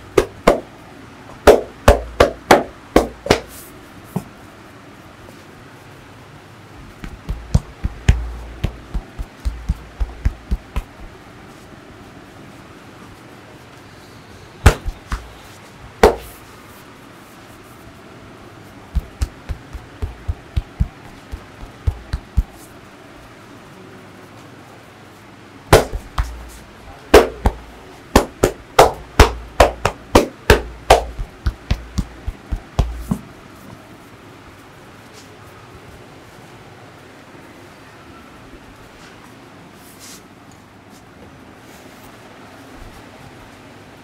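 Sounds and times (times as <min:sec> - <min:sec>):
hands slapping and patting body: 0:00.2 - 0:00.6, 0:01.5 - 0:03.6, 0:06.8 - 0:11.2, 0:14.6 - 0:15.4, 0:16.0 - 0:16.4, 0:18.9 - 0:22.7, 0:25.7 - 0:26.6, 0:27.2 - 0:33.2.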